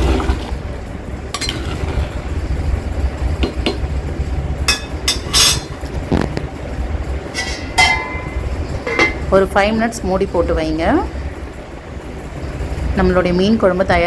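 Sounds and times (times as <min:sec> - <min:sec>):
metal spoon scraping a pot: 0:04.7 - 0:05.8, 0:07.3 - 0:09.3.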